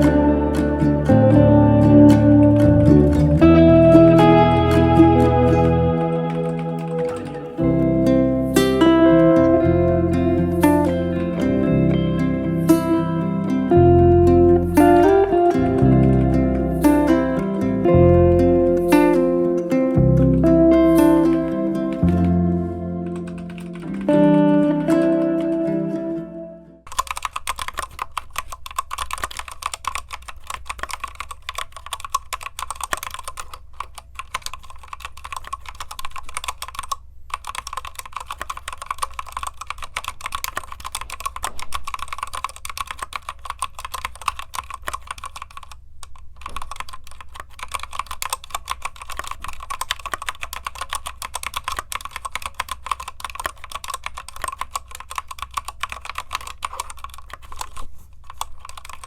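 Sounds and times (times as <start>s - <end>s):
fast typing on mechanical keyboard: 2.2s - 7.6s, 23.0s - 24.2s, 26.9s - 59.0s.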